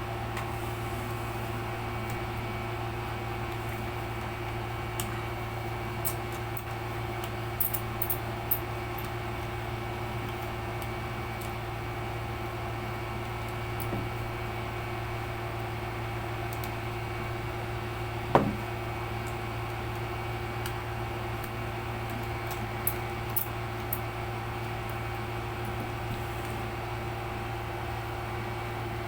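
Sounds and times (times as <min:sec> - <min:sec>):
steady hum: 0:00.0 - 0:28.5
knock on laptop case: 0:18.3 - 0:18.7.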